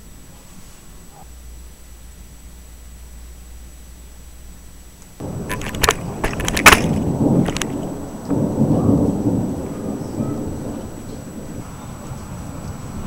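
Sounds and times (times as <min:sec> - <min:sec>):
rolling thunder rumble: 0:01.3 - 0:13.0
sharp thunder cracks: 0:05.2 - 0:13.0.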